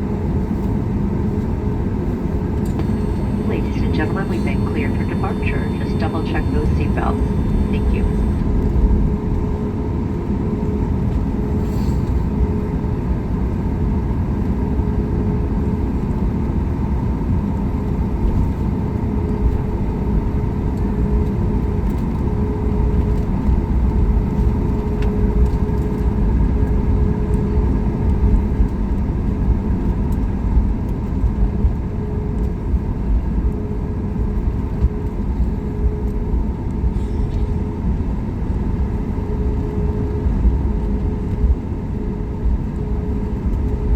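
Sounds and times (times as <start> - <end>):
steady humming tones: 0.0 - 10.8
aircraft cabin low rumble: 0.0 - 43.9.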